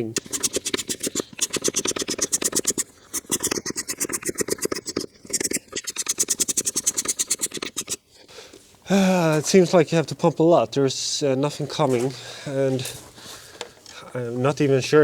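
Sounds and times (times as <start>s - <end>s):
hand pump scratchy clicks: 0.0s - 14.9s.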